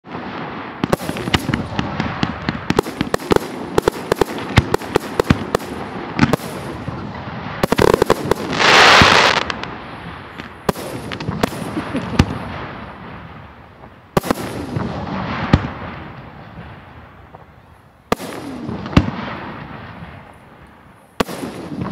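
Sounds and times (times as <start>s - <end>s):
fireworks bangs and crackles: 0.0s - 21.9s
firework booms: 0.1s - 21.9s
hissing crackle: 7.5s - 13.6s.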